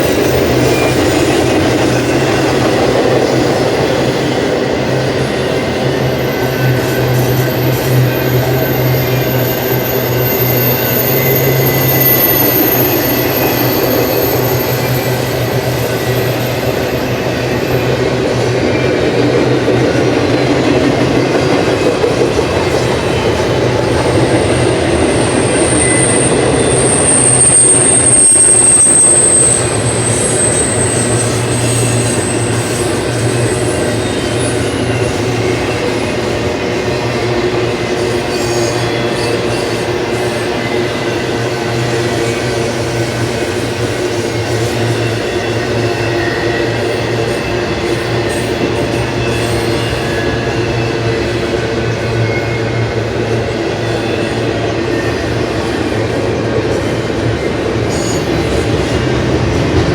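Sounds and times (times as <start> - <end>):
freight train wheels rumbling: 0.0 - 59.9
high-pitched wheel squeal: 5.8 - 17.9, 22.7 - 36.4.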